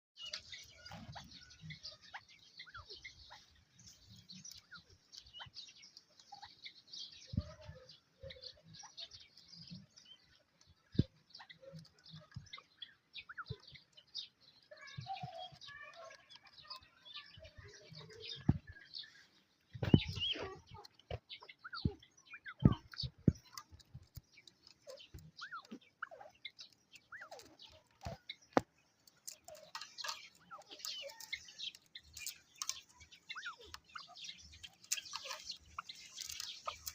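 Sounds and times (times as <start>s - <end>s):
small birds chirping: 0.0s - 36.9s
soft thumps: 19.7s - 22.0s.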